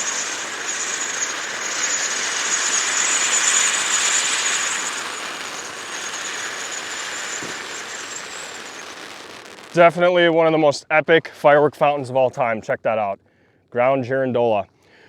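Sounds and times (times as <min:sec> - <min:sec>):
thin high whistle: 0:00.0 - 0:09.8
firework fountain jet hiss: 0:00.0 - 0:10.3.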